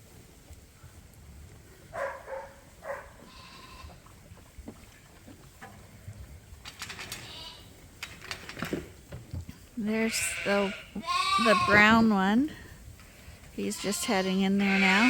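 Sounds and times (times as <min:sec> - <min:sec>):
lambs bleating: 0:03.2 - 0:04.0, 0:07.2 - 0:07.7, 0:09.9 - 0:12.0, 0:13.7 - 0:15.0
clicks and rustles: 0:06.6 - 0:07.4, 0:08.0 - 0:09.6.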